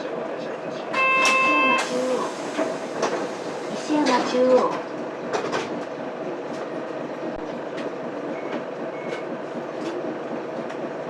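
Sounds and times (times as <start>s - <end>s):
bus diesel engine idling: 0.0s - 11.0s
short faint beeps: 1.0s - 1.9s.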